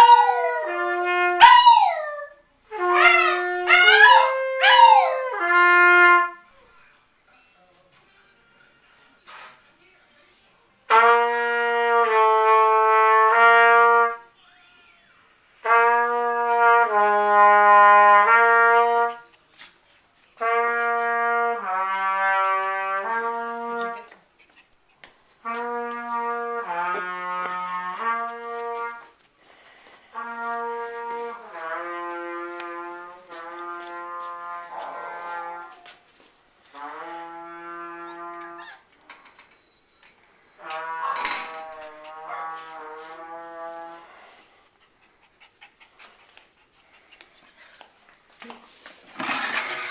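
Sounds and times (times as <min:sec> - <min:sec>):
trumpet playing held notes: 0:00.0 - 0:06.5, 0:10.9 - 0:14.3, 0:15.6 - 0:19.3, 0:20.4 - 0:24.1, 0:25.4 - 0:29.2, 0:30.0 - 0:35.9, 0:36.6 - 0:38.7, 0:40.6 - 0:44.5.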